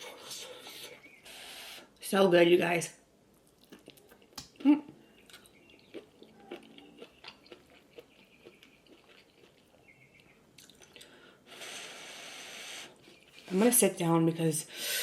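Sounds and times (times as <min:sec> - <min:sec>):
chewing noodles: 0:03.4 - 0:11.2.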